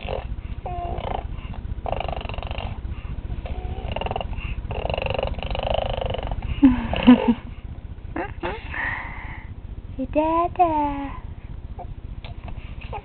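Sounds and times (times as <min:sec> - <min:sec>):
baby growling vocal noises: 0:00.0 - 0:01.3, 0:03.4 - 0:07.4.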